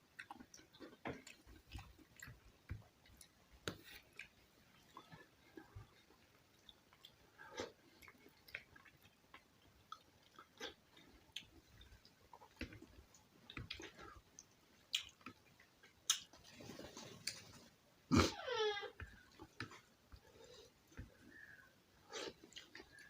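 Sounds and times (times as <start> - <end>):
wet chewing: 0.0 - 18.3.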